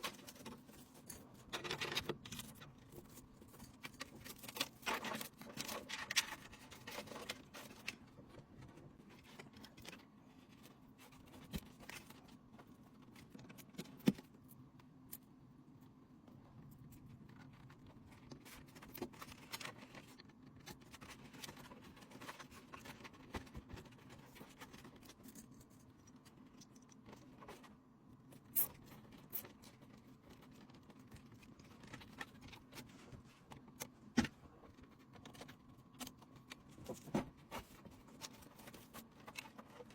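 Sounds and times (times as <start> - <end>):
clicks and scrapes of computer parts: 0.0 - 10.1
faint steady hum: 0.0 - 39.9.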